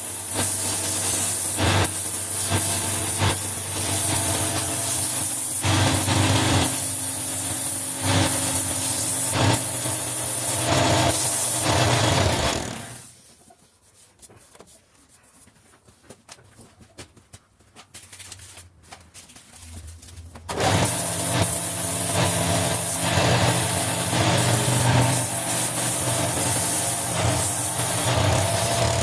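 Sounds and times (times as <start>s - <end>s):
wood lathe motor hum: 7.9s - 13.1s, 20.5s - 29.0s.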